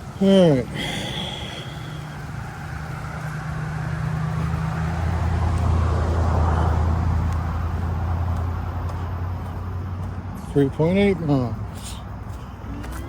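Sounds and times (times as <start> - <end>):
traffic engine drone and road noise: 0.0 - 13.0
vehicle passing: 0.0 - 13.0.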